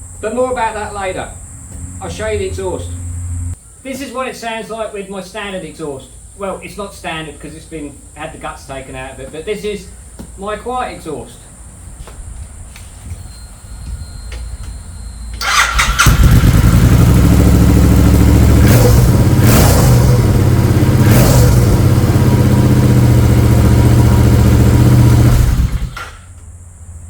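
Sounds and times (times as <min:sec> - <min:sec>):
motorcycle starter cranking: 0:15.3 - 0:22.1, 0:22.9 - 0:26.4
motorcycle engine running loudly: 0:15.5 - 0:26.2.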